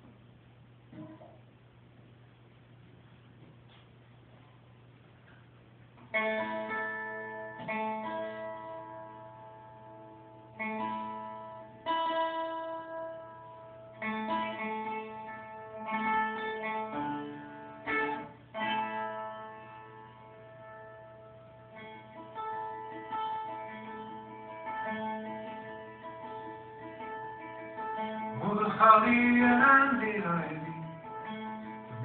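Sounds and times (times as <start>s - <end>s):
faint low hum: 0.0s - 32.0s
acoustic guitar chords ringing: 6.1s - 32.0s.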